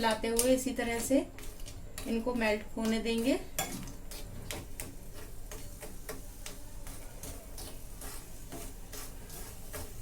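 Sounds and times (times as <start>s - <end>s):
utensil clicking against pan: 0.0s - 10.0s.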